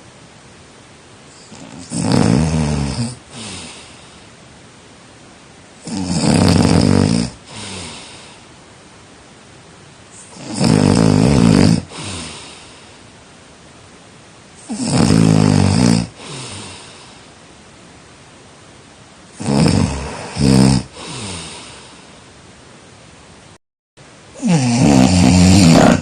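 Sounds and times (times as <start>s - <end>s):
person snoring: 1.3s - 4.2s, 5.8s - 8.5s, 10.2s - 13.0s, 14.6s - 17.3s, 19.3s - 22.2s, 24.3s - 26.0s.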